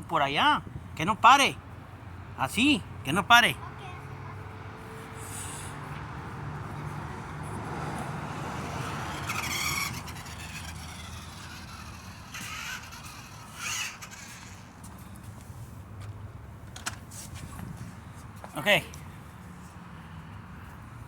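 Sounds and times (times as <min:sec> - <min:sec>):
toy car motor whirring: 0:06.8 - 0:15.6
tyres scuffing on ground: 0:16.9 - 0:19.8.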